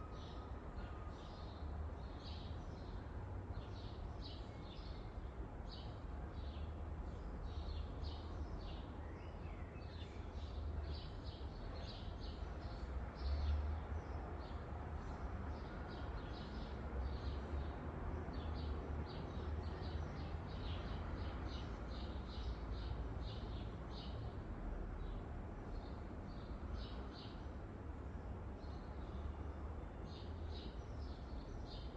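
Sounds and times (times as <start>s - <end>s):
small birds chirping: 28.2s - 31.9s.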